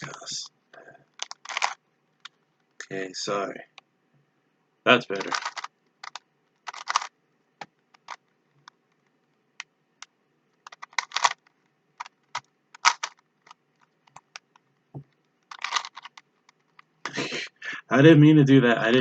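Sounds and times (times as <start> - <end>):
plastic puzzle cube clicking: 1.1 - 2.4, 5.1 - 9.0, 10.0 - 16.9.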